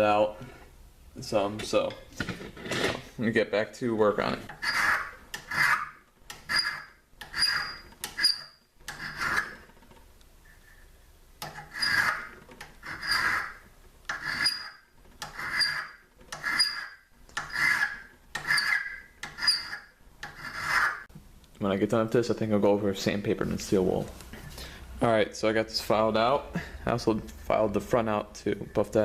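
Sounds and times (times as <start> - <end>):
hand file scraping steel: 4.5 - 9.7, 11.4 - 21.1
high squeal of file stroke: 4.6 - 9.6, 11.7 - 21.1.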